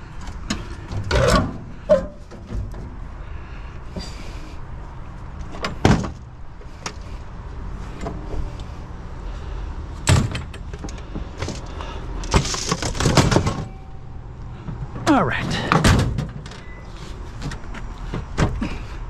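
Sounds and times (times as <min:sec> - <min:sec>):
scrap metal knocks and clanks: 0:00.4 - 0:03.0.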